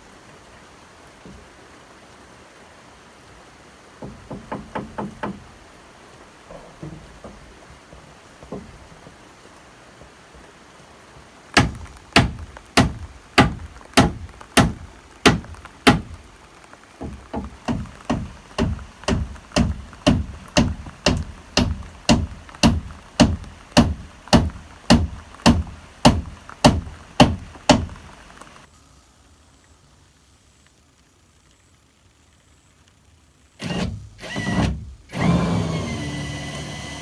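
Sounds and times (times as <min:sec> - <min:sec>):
forceful blows on wood: 0:04.0 - 0:05.7, 0:11.6 - 0:16.3, 0:17.0 - 0:28.6.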